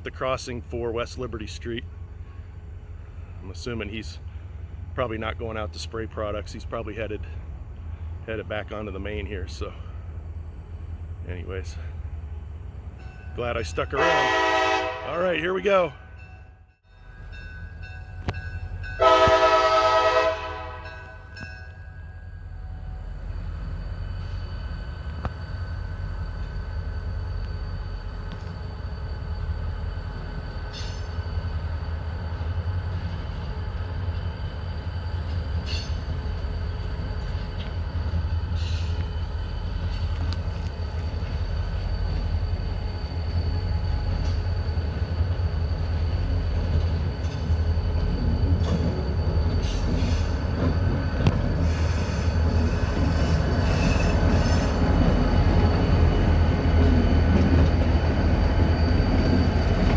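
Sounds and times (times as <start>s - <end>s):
diesel locomotive engine rumble: 0.0s - 59.9s
wheel flanges squealing on rail: 17.1s - 59.9s.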